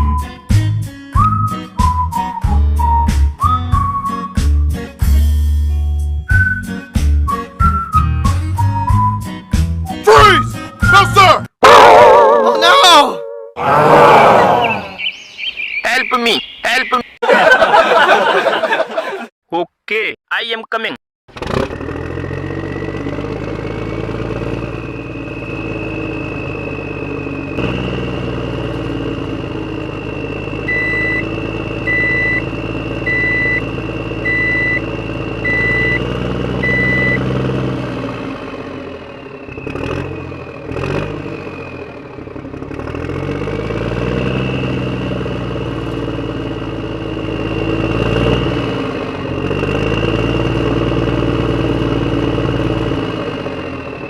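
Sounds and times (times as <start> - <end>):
short beeps: 30.7 - 37.3.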